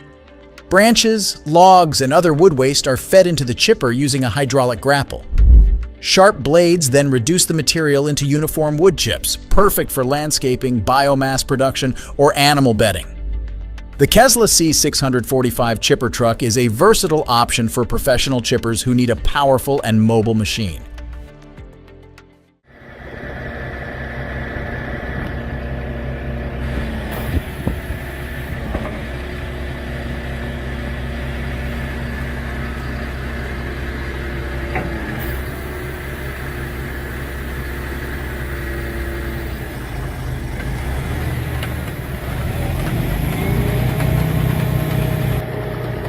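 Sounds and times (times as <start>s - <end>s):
heavy machine engine running: 22.7s - 46.0s.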